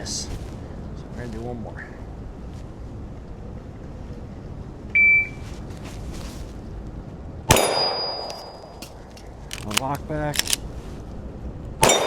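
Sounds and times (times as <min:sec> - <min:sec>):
shot timer beep: 0:05.0 - 0:05.4
pistol shot: 0:07.5 - 0:08.8, 0:11.8 - 0:12.0.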